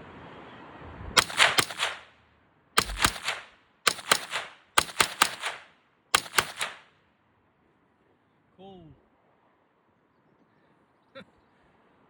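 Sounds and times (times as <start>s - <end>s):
rifle shots: 1.2s - 2.1s, 2.8s - 6.9s.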